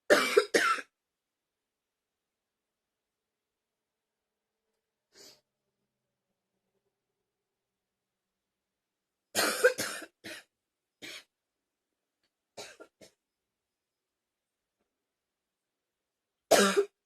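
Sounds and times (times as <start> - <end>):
person coughing: 0.1 - 0.9, 9.4 - 11.3, 16.5 - 17.0.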